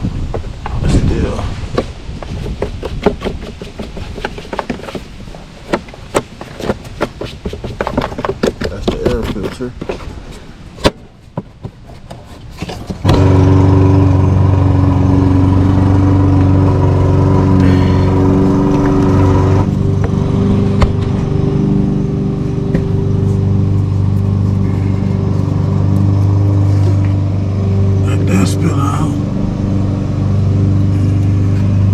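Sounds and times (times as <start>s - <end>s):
small engine starting and running: 13.0s - 31.9s.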